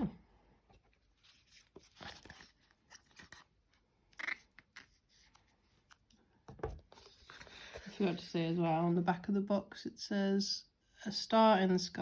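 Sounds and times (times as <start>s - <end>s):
paper rustling: 0.9s - 3.5s.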